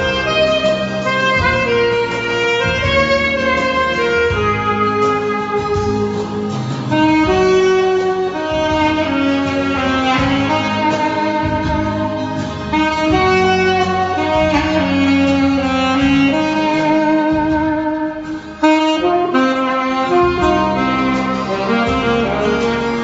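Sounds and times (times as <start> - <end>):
low accompaniment: 0.0 - 23.0
saxophone melody: 0.0 - 23.0.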